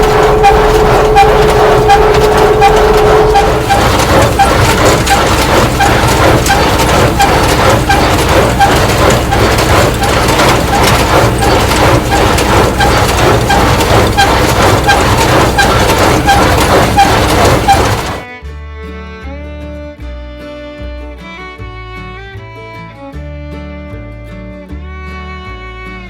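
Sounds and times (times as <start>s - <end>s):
hay baler plunger knocking: 0.0s - 18.2s
tractor engine running: 0.0s - 18.3s.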